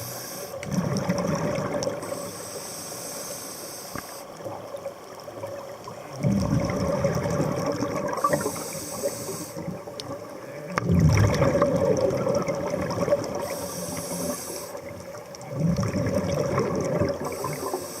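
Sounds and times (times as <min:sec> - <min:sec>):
diver inhaling through regulator: 0:00.0 - 0:00.6, 0:02.0 - 0:04.3, 0:08.1 - 0:09.8, 0:13.4 - 0:14.9, 0:17.2 - 0:18.0
bubbling exhale: 0:06.2 - 0:09.8, 0:10.7 - 0:18.0.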